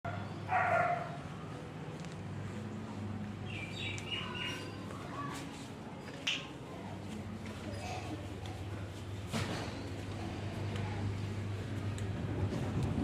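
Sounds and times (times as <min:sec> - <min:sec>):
birds calling and chirping: 0:03.4 - 0:05.2.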